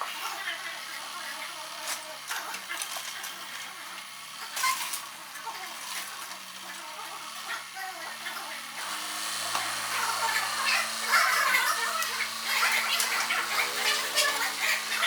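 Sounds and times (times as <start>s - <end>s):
diesel engine hum: 8.1s - 15.0s.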